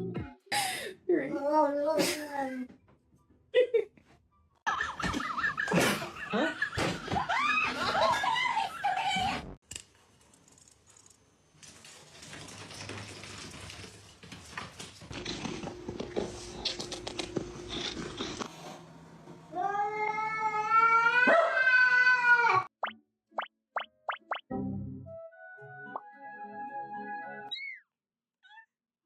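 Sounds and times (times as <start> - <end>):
cat yowling: 19.6 - 22.7.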